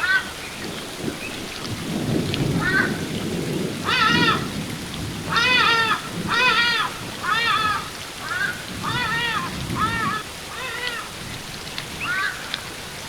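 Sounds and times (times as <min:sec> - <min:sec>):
ibis calling: 0:03.8 - 0:04.5, 0:05.3 - 0:11.4, 0:12.0 - 0:12.7
waterfall rushing: 0:03.8 - 0:13.0.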